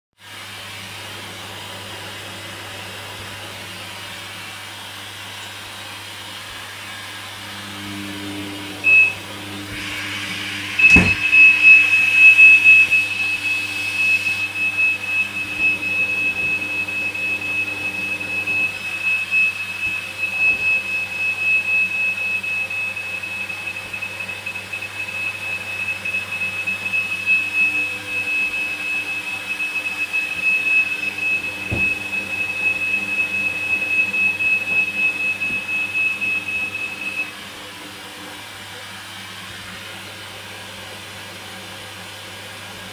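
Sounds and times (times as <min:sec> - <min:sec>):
inlet valve whistle: 0:07.3 - 0:37.5
washing machine click: 0:10.8 - 0:11.8.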